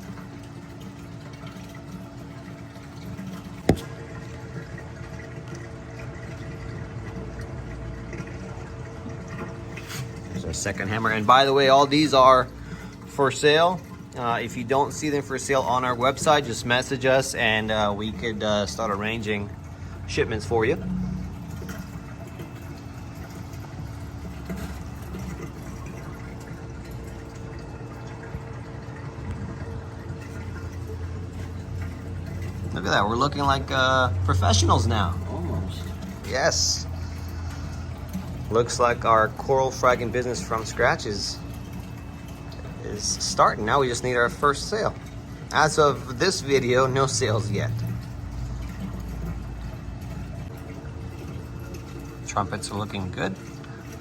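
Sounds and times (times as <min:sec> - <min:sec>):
aquarium water splashing: 0:00.0 - 0:54.0
faint steady hum: 0:00.0 - 0:54.0
sharp knock: 0:03.7 - 0:03.9.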